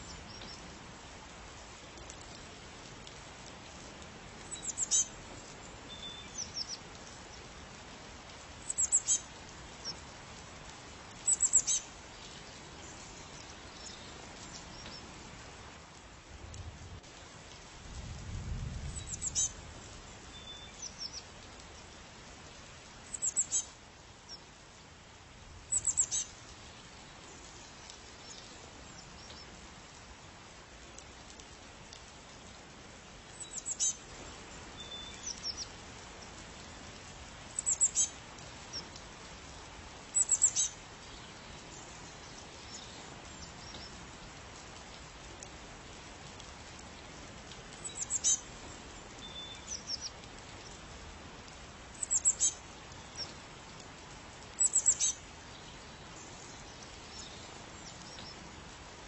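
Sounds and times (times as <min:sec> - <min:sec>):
steady background hiss: 0:00.0 - 0:59.0
songbird chirping: 0:04.4 - 0:05.1, 0:05.8 - 0:07.5, 0:25.7 - 0:29.5, 0:34.6 - 0:35.8, 0:37.6 - 0:38.9, 0:49.2 - 0:50.8, 0:51.9 - 0:53.4, 0:54.6 - 0:58.4.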